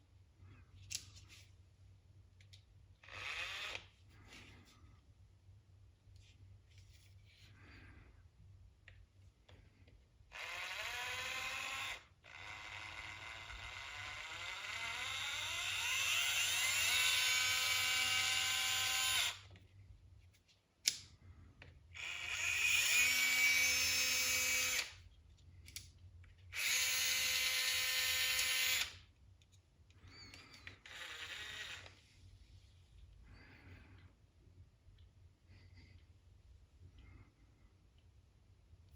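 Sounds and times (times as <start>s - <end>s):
cordless screwdriver motor whining: 3.0s - 3.9s, 10.3s - 19.5s, 22.0s - 25.0s, 26.6s - 29.0s, 30.1s - 32.0s.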